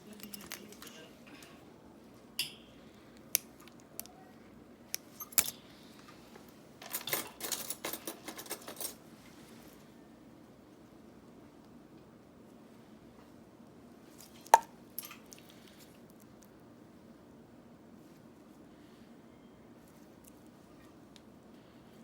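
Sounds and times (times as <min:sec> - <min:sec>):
metal tools clinking and scraping: 0:00.1 - 0:01.0, 0:05.0 - 0:05.6, 0:06.8 - 0:09.0.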